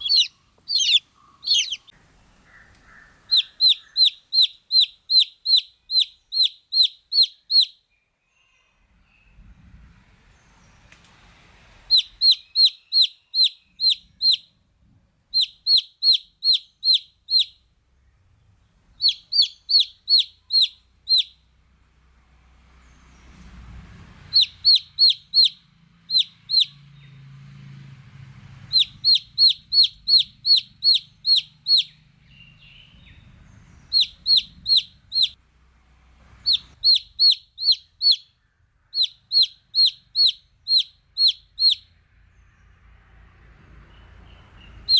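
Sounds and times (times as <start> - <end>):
baby chicks peeping: 0.0 - 7.8, 11.8 - 14.6, 15.3 - 17.6, 19.0 - 21.4, 24.2 - 27.2, 28.7 - 35.4, 36.4 - 41.9, 44.0 - 44.9.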